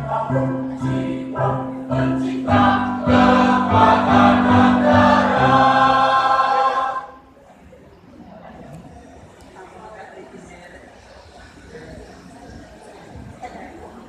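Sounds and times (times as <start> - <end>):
choir singing: 0.0 - 7.3.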